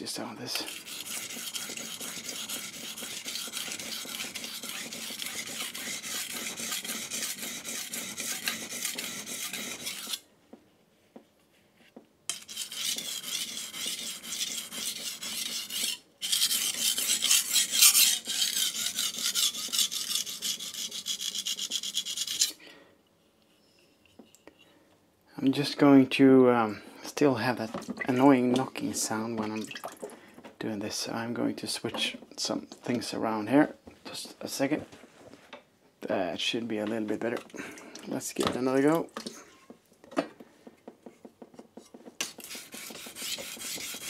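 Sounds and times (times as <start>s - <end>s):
knife scraping on whetstone: 0.5s - 10.2s, 12.3s - 22.6s, 41.8s - 44.0s.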